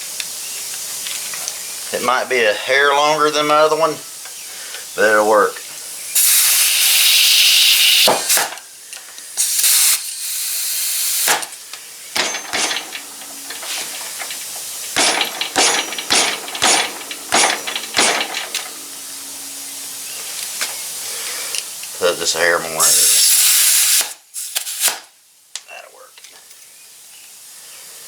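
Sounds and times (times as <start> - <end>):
compressed air hissing: 4.0 - 21.8, 22.4 - 25.1.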